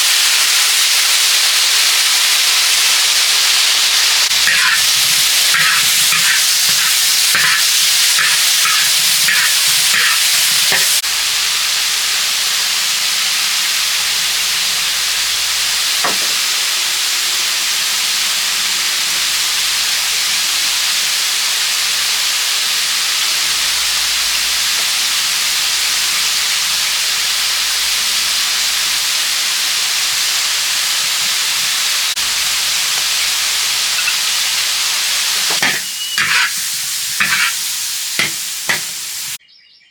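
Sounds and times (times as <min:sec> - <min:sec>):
food sizzling: 0:00.0 - 0:39.4
utensil stirring food: 0:03.5 - 0:11.0, 0:32.2 - 0:39.4.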